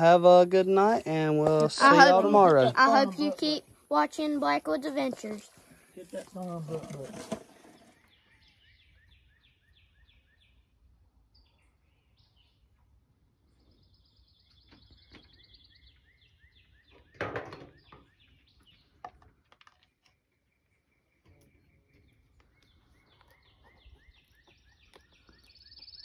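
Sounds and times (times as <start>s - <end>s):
faint bird chirps and trill: 7.6s - 12.7s, 13.4s - 26.0s.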